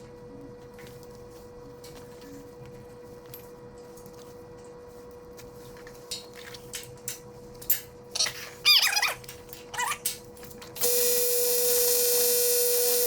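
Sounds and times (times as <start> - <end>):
faint steady hum: 9.2 - 13.0.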